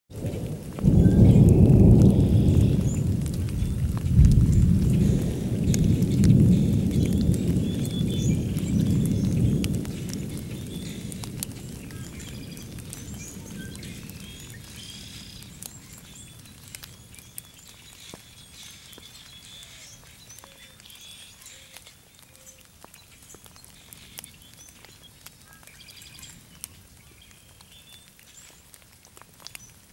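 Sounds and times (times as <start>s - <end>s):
thunder rumble: 0.1s - 16.1s
rain dripping and pattering: 0.1s - 29.9s
birds chirping: 0.2s - 28.8s.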